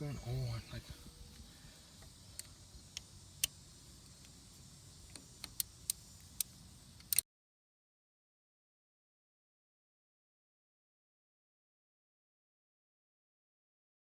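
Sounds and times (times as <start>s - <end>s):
ratchet clicking: 5.1s - 7.2s.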